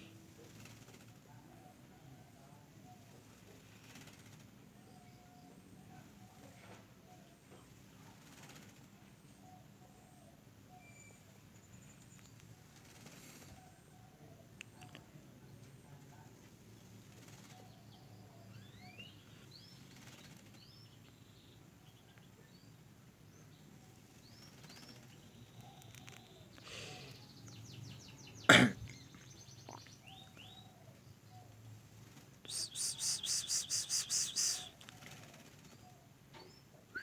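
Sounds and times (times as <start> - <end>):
small birds chirping: 7.2 - 37.0
quick run of ticks: 32.4 - 35.7.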